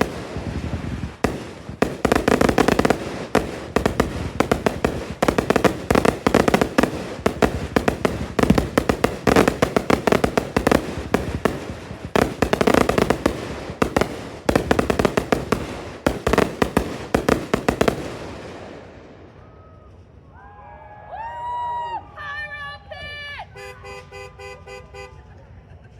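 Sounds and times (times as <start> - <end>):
fireworks crackling pops: 0.0 - 18.9.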